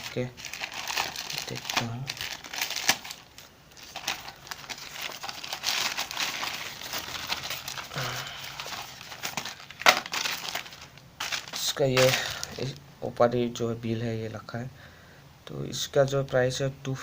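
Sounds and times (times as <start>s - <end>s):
packaging crinkling and rustling: 0.0s - 12.8s.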